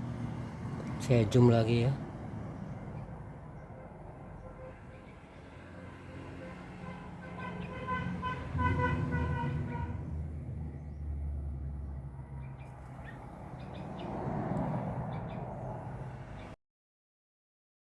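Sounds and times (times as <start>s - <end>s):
vehicle passing: 0.0s - 16.6s
vehicle horn tooting: 3.7s - 10.2s.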